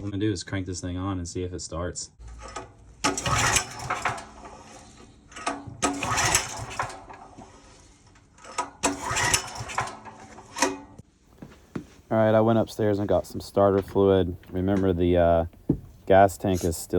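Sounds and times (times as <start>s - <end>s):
generator engine cranking: 2.2s - 11.0s.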